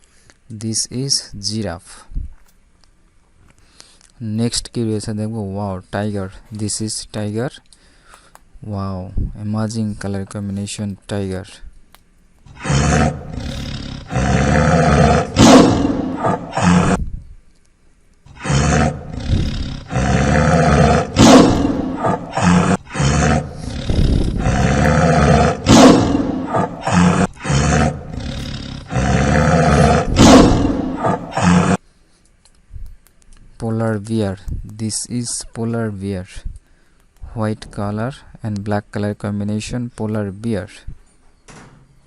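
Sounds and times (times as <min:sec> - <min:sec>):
tiger roaring: 0:12.5 - 0:17.0, 0:18.3 - 0:31.8.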